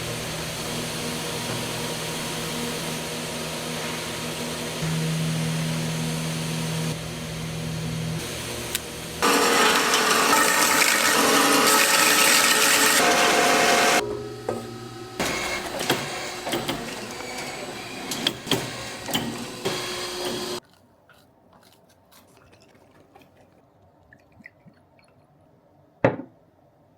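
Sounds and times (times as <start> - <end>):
machine running loudly: 0.0 - 20.6.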